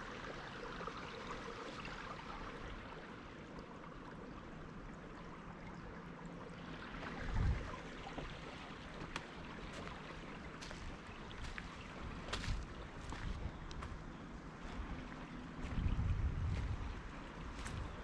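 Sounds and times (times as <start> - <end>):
wind buffeting microphone: 7.0 - 8.4, 10.6 - 18.0
footsteps crunching on dry leaves: 10.6 - 14.0.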